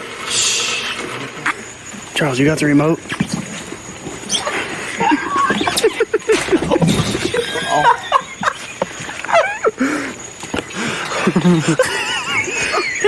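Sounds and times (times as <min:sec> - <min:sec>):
high squeaky gasps: 0:00.0 - 0:02.1, 0:03.1 - 0:07.2
wheezing laughter: 0:04.2 - 0:13.0.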